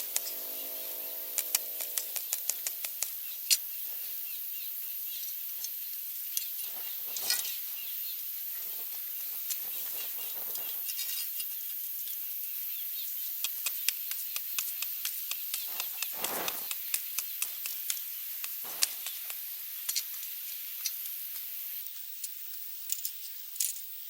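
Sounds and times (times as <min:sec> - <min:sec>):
steady high hiss: 0:00.0 - 0:24.0
sharp irregular clicks: 0:01.3 - 0:03.7, 0:13.4 - 0:20.0
short rattling chirps: 0:06.4 - 0:11.8, 0:15.5 - 0:20.0.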